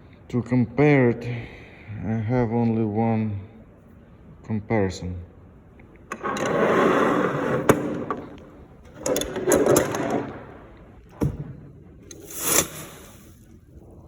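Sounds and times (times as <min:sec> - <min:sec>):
pliers rustling and clattering: 0:08.1 - 0:11.3, 0:12.1 - 0:13.5
short scrape: 0:12.1 - 0:13.5.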